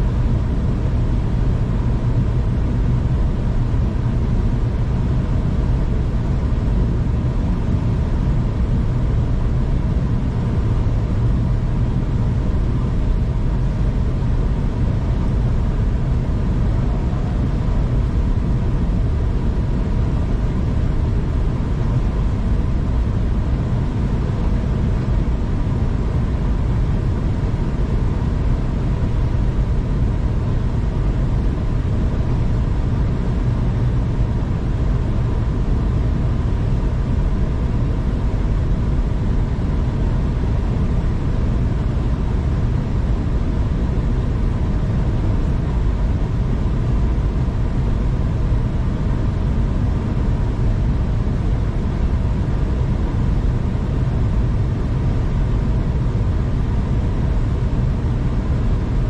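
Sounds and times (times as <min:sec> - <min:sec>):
faint steady whine: 0:00.0 - 0:59.0
train rumbling on track: 0:16.4 - 0:18.0.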